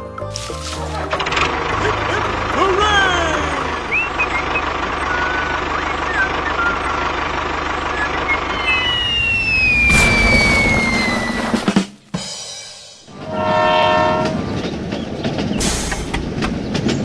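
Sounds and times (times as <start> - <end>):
vehicle engine: 0.3 - 11.7, 13.0 - 17.0
high whistle sliding down: 8.4 - 11.6, 13.2 - 14.5.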